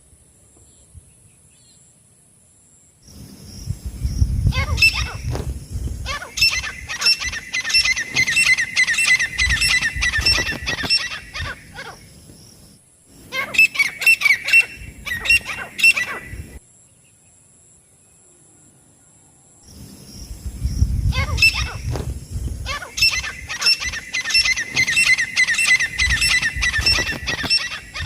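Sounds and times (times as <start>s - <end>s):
francolin shrill repeated calls: 4.4s - 5.4s, 6.0s - 12.2s, 13.2s - 16.6s, 20.7s - 22.0s, 22.6s - 28.0s.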